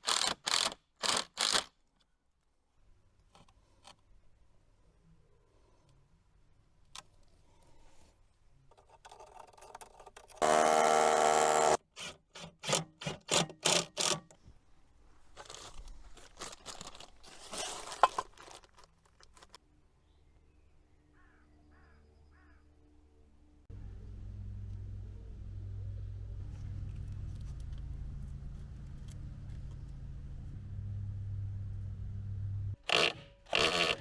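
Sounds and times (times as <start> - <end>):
power tool running: 10.4 - 11.8, 32.8 - 34.0.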